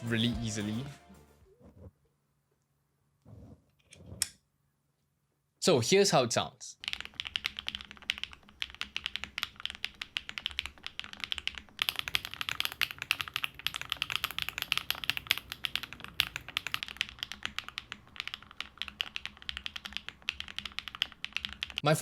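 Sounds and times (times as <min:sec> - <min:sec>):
fast mechanical keyboard typing: 0:06.8 - 0:21.8.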